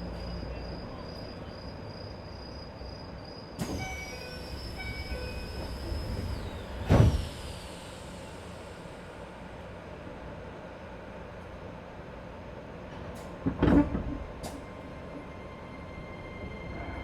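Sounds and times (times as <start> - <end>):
loud thump of doors closing: 6.8 - 7.4.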